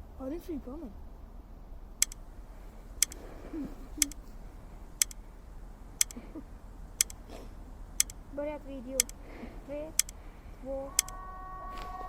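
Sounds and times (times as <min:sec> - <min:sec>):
clock ticking: 0:02.0 - 0:02.3, 0:03.0 - 0:03.2, 0:03.9 - 0:04.3, 0:05.0 - 0:05.2, 0:06.0 - 0:06.2, 0:07.0 - 0:07.2, 0:08.0 - 0:08.2, 0:09.0 - 0:09.2, 0:09.9 - 0:10.2.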